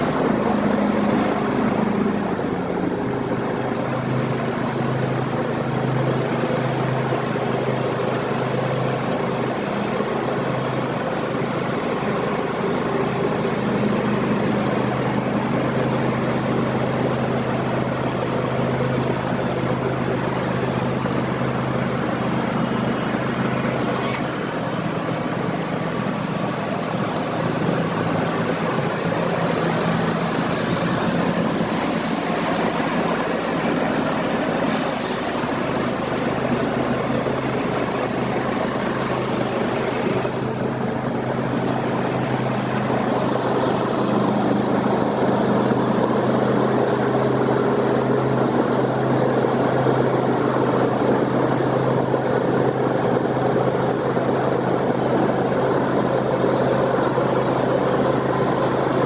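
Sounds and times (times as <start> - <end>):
sawmill engine running: 0.0 - 59.0.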